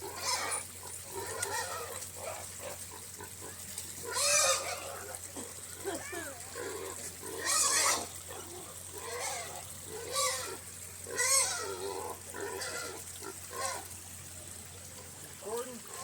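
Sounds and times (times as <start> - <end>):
pigs grunting and squealing: 0.0 - 13.9.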